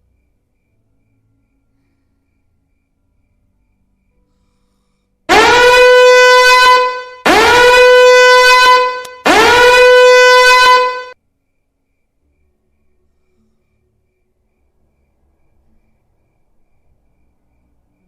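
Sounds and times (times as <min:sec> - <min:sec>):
horn blasts swooping up in pitch: 0:05.3 - 0:11.2.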